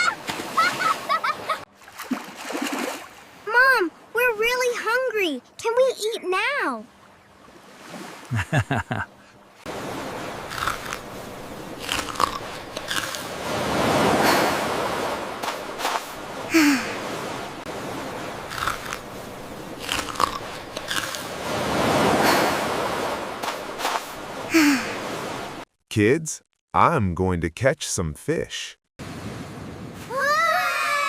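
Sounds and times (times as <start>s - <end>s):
ocean surf hissing: 13.3s - 19.7s, 21.4s - 25.6s.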